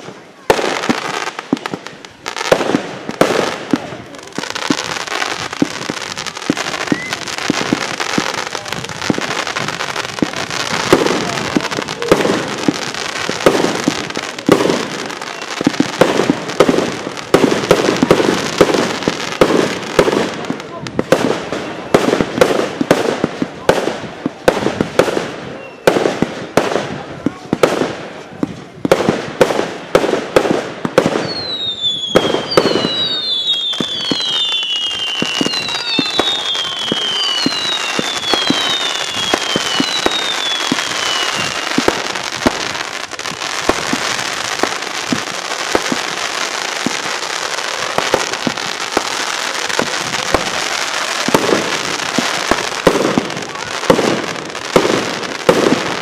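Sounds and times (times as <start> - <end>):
firework bangs: 0.0 - 56.0
firework crackling: 0.0 - 56.0
falling firework whistles: 4.6 - 8.4, 31.1 - 42.6.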